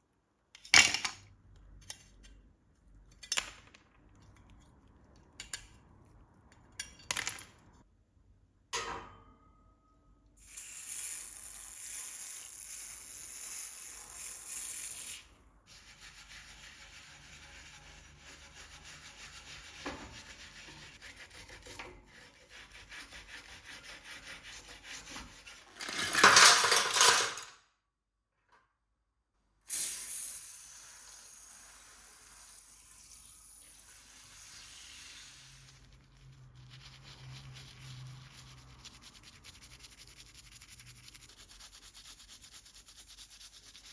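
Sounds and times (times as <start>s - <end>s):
sanding small parts: 10.4s - 27.1s, 33.6s - 43.9s.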